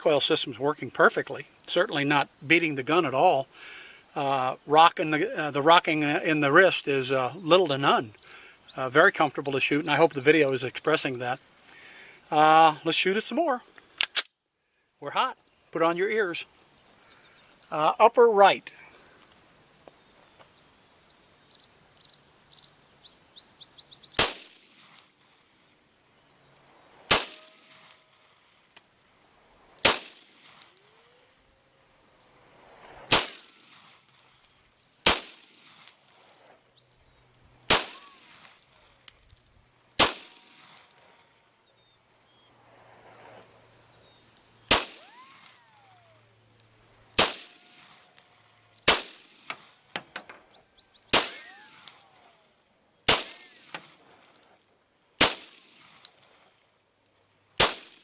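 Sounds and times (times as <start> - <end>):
pistol shots: 24.1 - 25.0, 27.1 - 27.9, 29.8 - 30.5, 33.1 - 33.9, 35.0 - 35.9, 37.7 - 38.6, 40.0 - 40.9, 44.7 - 45.8, 47.2 - 48.0, 48.9 - 49.7, 51.1 - 52.3, 53.1 - 54.0, 55.2 - 56.1, 57.6 - 58.0.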